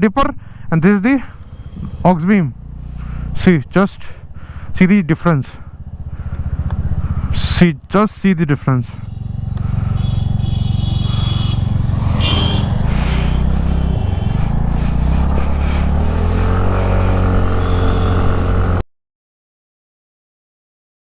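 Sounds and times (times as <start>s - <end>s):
scooter engine running: 1.2s - 3.5s, 4.2s - 4.8s, 5.6s - 7.9s, 8.9s - 18.8s.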